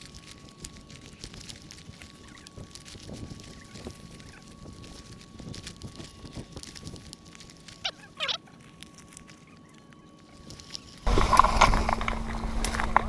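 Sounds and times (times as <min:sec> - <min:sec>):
gliding bird calls: 0:11.1 - 0:13.0
steady low hum: 0:11.1 - 0:13.0.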